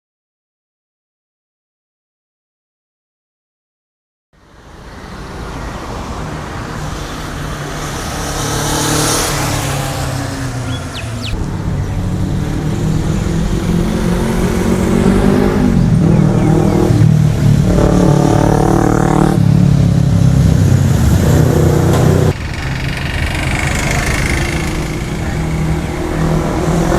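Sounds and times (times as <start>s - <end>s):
motorcycle engine revving: 6.6s - 26.9s.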